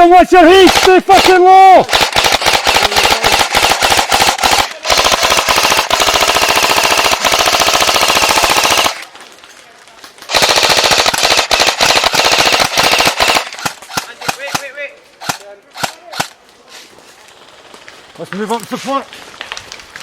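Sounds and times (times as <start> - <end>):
airsoft machine gun full-auto bursts: 0.4 - 9.1, 10.3 - 14.6.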